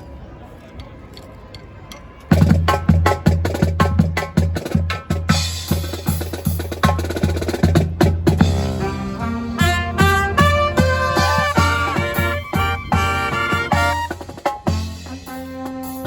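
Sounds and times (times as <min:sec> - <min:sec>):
marching band drums: 0:02.3 - 0:16.0
brass band playing: 0:08.3 - 0:16.0.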